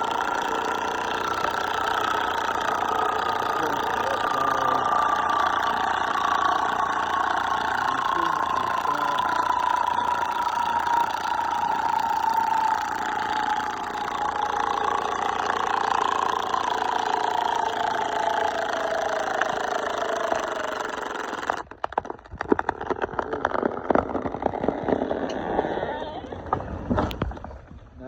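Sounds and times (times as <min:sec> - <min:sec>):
chainsaw cutting: 0:00.0 - 0:27.4.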